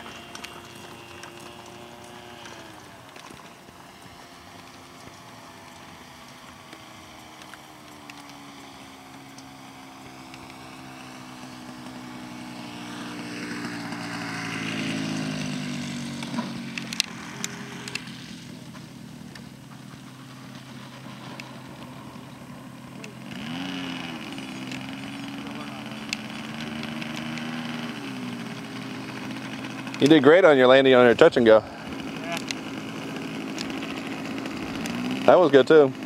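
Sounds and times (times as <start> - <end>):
sharp clicks: 0.0 - 9.5, 15.3 - 19.9, 23.0 - 30.2, 32.0 - 35.3
model airplane engine and propeller: 0.0 - 36.0.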